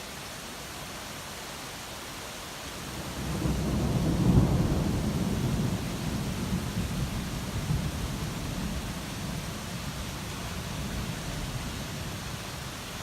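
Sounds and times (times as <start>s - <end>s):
rain hissing: 2.7s - 13.0s
thunder rumbling: 3.2s - 9.7s.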